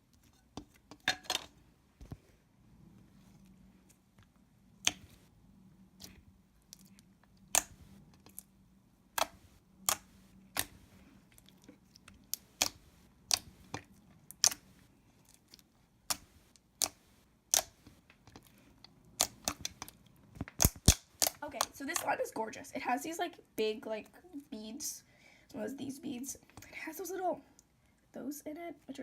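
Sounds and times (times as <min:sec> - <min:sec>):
slime clicking and popping: 0:04.8 - 0:05.2, 0:06.0 - 0:08.4, 0:09.2 - 0:10.8, 0:12.1 - 0:14.7, 0:15.5 - 0:18.5, 0:19.1 - 0:21.4.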